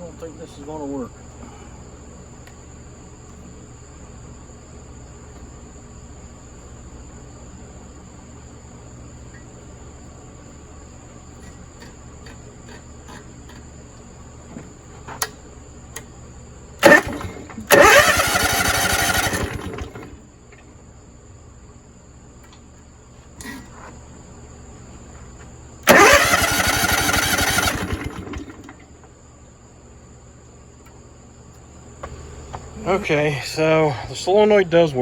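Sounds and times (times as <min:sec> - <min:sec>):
engine starter cranking: 0:16.8 - 0:20.2, 0:25.8 - 0:28.9.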